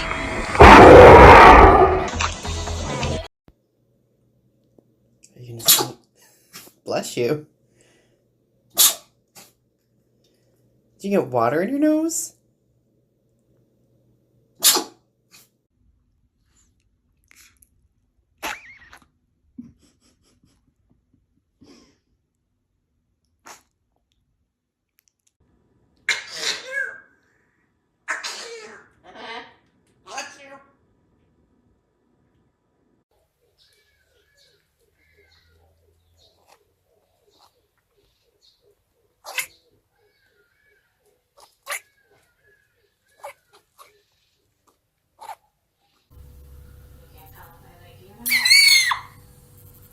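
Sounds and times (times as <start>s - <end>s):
animal sneezing: 5.6s - 6.8s, 8.7s - 9.6s, 14.6s - 15.5s, 23.4s - 23.7s, 26.1s - 27.0s, 28.1s - 28.8s.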